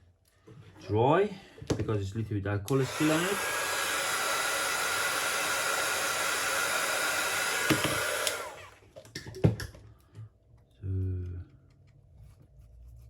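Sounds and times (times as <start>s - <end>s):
hot-air blower running: 2.7s - 8.8s.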